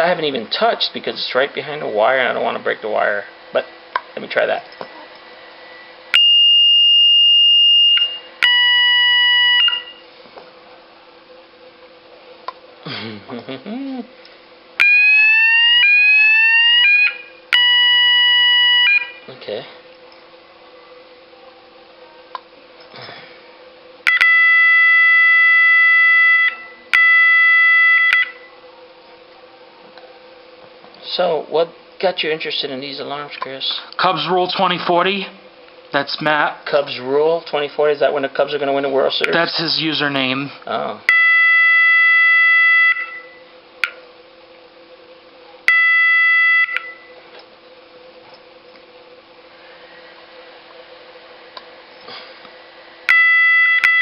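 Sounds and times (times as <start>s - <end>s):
high-pitched fire alarm tone: 6.1s - 10.1s, 14.8s - 19.3s, 24.0s - 28.6s, 41.1s - 43.5s, 45.7s - 47.2s, 53.1s - 54.0s.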